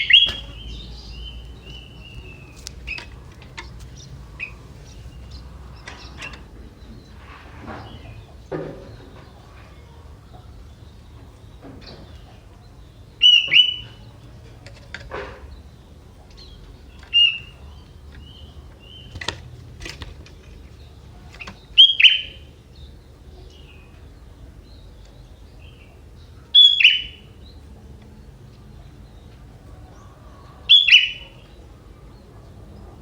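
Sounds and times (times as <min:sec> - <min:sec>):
bird chirping: 0:00.0 - 0:14.3, 0:15.4 - 0:33.0.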